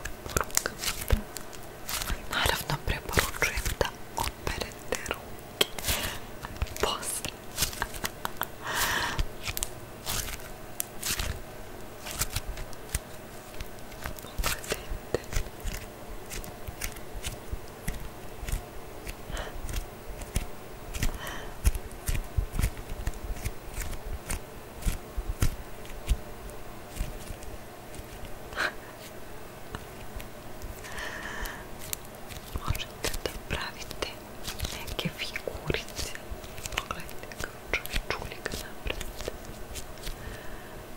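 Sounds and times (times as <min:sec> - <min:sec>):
sticky slime squeezed and pulled: 0:00.4 - 0:04.4, 0:09.4 - 0:11.4, 0:12.0 - 0:26.2.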